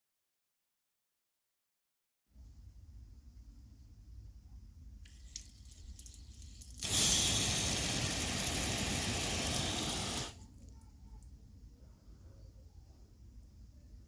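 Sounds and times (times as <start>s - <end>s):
hose nozzle spraying water: 5.1s - 10.4s.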